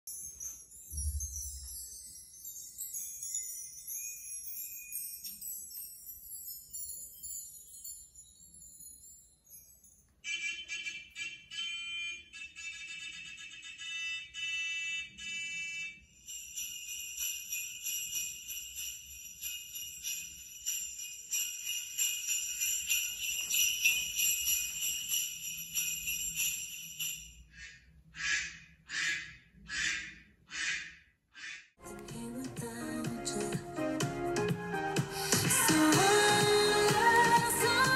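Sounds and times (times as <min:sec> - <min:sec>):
bells jingling: 0:00.0 - 0:10.2, 0:16.2 - 0:27.5, 0:35.3 - 0:37.9.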